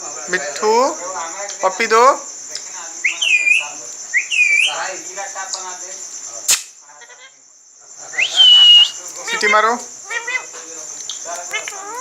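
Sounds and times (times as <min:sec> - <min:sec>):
parrot whistling: 0:03.0 - 0:04.8, 0:08.1 - 0:09.5
sharp click: 0:06.5 - 0:06.8.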